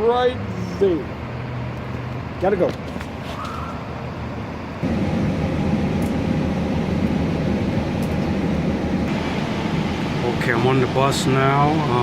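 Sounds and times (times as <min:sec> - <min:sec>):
bus engine rumbling: 0:03.8 - 0:12.0
faint steady whine: 0:04.2 - 0:12.0.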